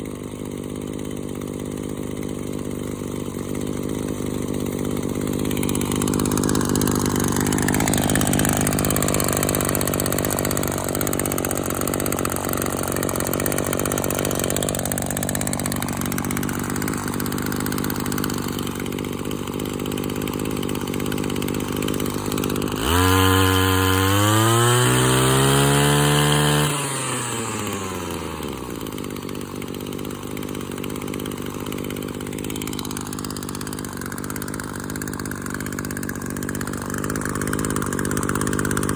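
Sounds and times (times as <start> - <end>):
brush cutter engine idling and revving: 0.0 - 38.9.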